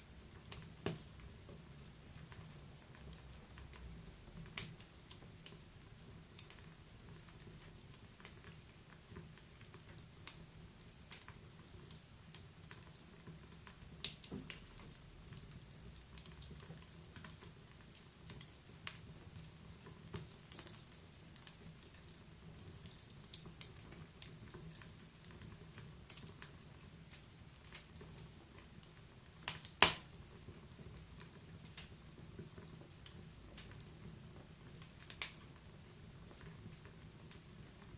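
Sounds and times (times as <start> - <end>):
wood fire crackling in stove: 0.0 - 37.9
loud pop of fire: 29.5 - 30.1.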